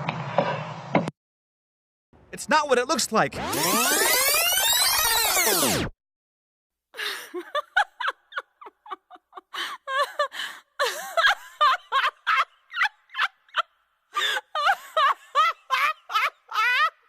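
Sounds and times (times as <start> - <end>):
high-pitched giggling laughter: 7.2 - 13.8, 14.4 - 17.0.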